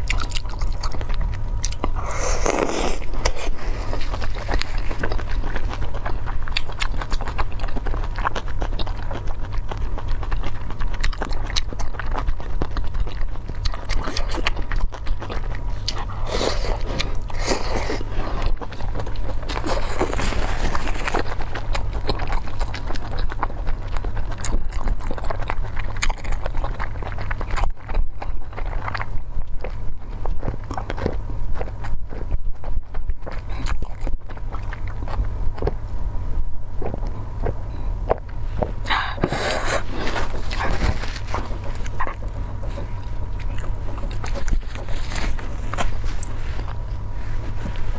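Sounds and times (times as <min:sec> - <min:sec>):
person chewing food: 0:00.0 - 0:47.9.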